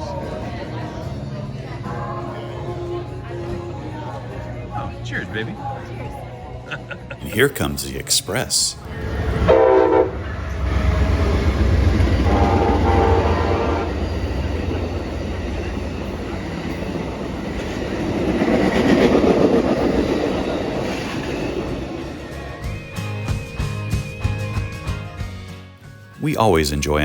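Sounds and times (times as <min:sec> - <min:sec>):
train wheels rumbling on rails: 0:08.9 - 0:22.8
train horn: 0:09.1 - 0:14.5.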